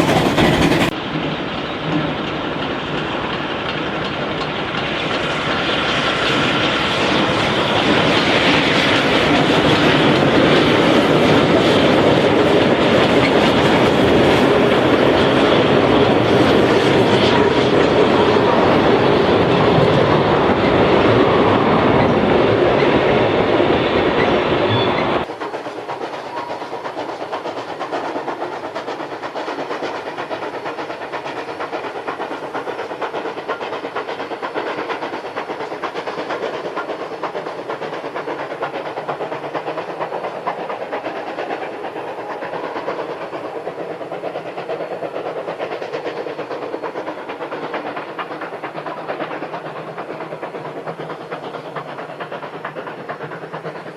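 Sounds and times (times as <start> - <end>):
steam train running: 0.0 - 53.9.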